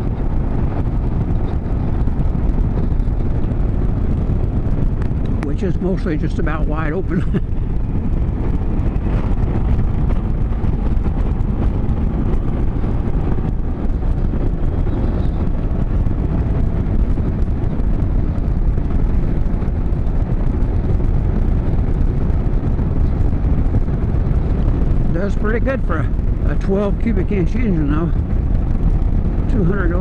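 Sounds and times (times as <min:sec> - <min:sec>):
motorcycle engine at high throttle: 0:00.0 - 0:30.0
wind rush on microphone: 0:00.0 - 0:30.0.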